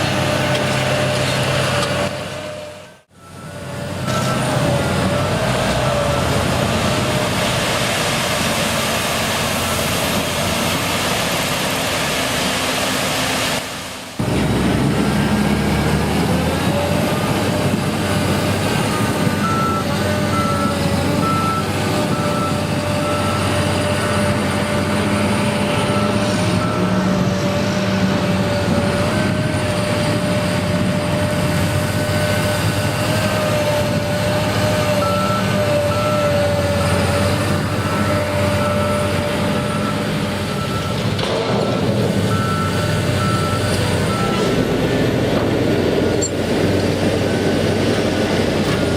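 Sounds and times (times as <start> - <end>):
diesel engine running: 0.0 - 48.9
reversing alarm beeping: 3.1 - 5.4, 18.8 - 24.4, 34.9 - 44.6.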